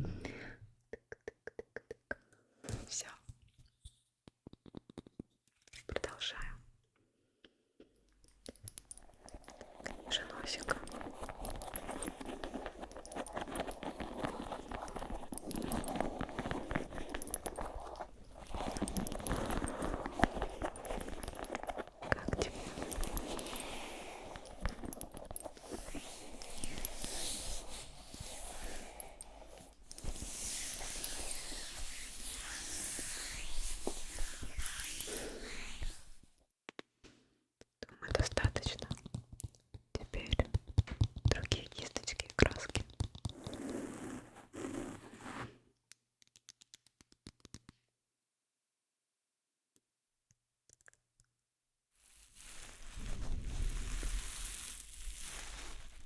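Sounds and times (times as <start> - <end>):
scratchy brushing strokes: 9.0 - 36.3, 52.0 - 56.0.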